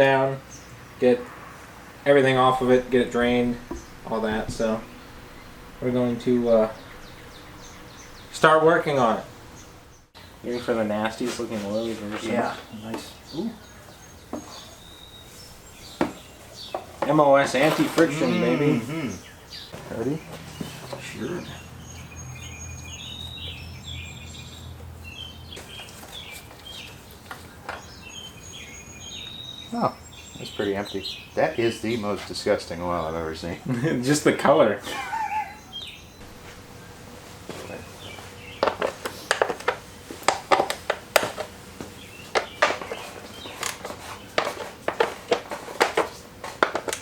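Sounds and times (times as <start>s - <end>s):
small birds chirping: 0.0s - 47.0s
low steady hum: 0.6s - 10.9s, 33.5s - 42.4s.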